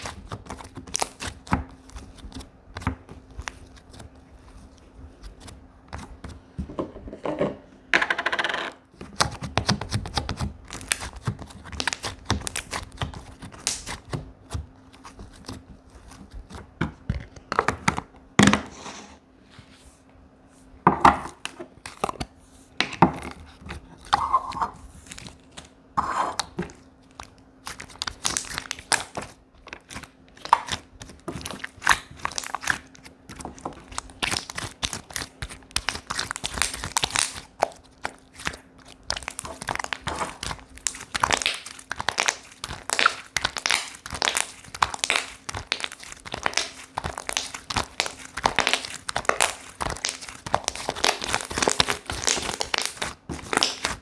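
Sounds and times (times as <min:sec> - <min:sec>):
slime squished by hand: 0:25.0 - 0:54.0.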